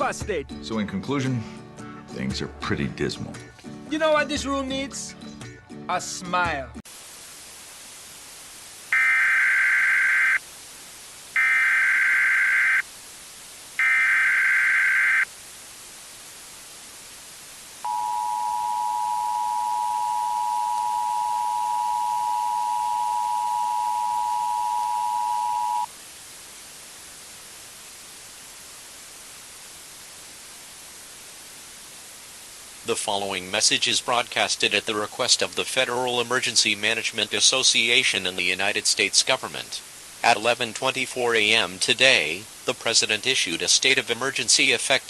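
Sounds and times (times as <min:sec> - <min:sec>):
constant hiss: 0:06.0 - 0:45.0
digital data tones: 0:17.9 - 0:25.9
two-tone attention signal: 0:17.9 - 0:25.9.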